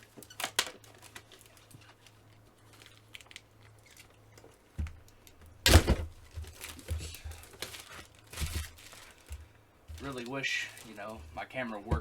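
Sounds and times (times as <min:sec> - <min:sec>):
wrapping crinkling: 0:00.0 - 0:12.0.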